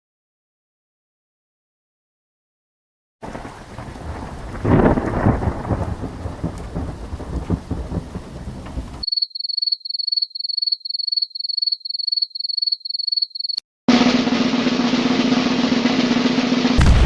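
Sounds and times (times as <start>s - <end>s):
rain: 3.2s - 9.0s
thunder crack and rumble: 3.2s - 9.0s, 13.9s - 17.0s.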